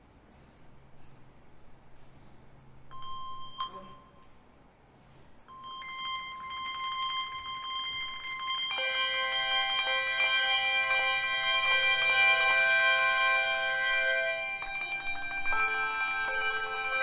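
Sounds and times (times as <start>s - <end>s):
handbells ringing: 2.9s - 4.3s, 5.5s - 17.0s.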